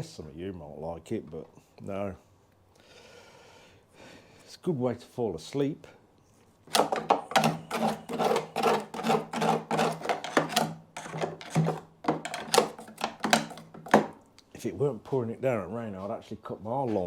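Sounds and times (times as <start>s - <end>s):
hand scraping on metal: 6.7s - 14.2s.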